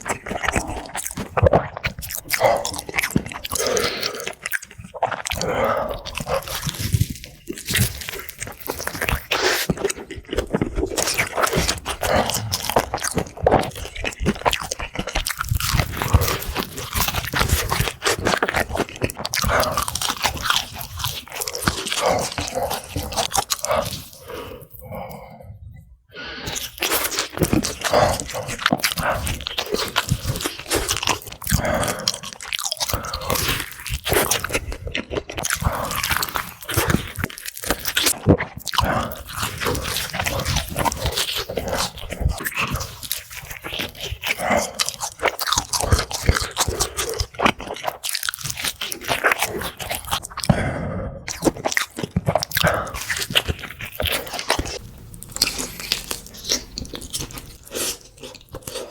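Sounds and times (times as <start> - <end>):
crunching fried chicken: 0.0 - 25.2, 26.5 - 58.9.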